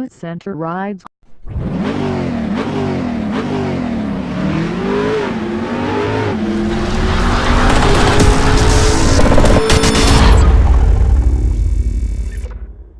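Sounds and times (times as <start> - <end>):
sports car engine revving: 1.4 - 11.4.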